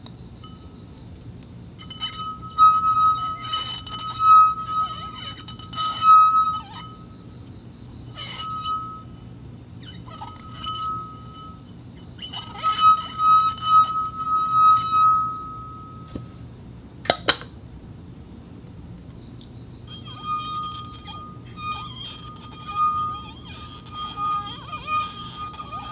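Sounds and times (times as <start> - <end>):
glass cup ringing when struck: 1.8 - 7.0, 12.3 - 16.3.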